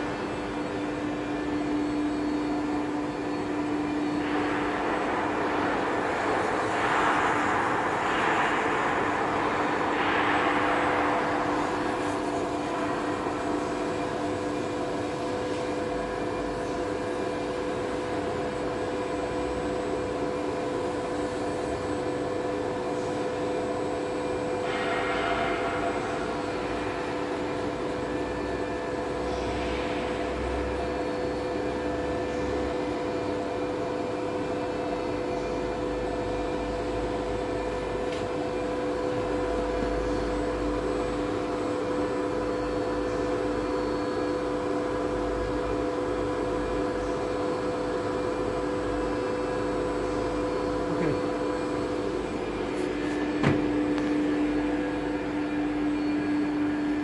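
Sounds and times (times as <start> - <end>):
electric machine hum: 0.0 - 57.0
low rumble: 3.4 - 15.4.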